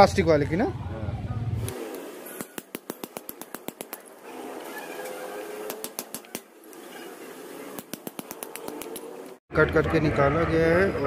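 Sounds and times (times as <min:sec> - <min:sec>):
rapid sharp clicks and taps: 0:01.9 - 0:04.2, 0:05.7 - 0:06.5, 0:07.8 - 0:09.4.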